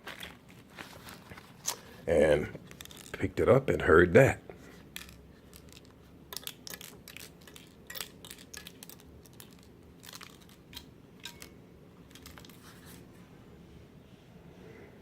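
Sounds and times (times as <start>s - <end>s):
multimeter being handled: 2.6s - 3.3s, 4.7s - 13.1s.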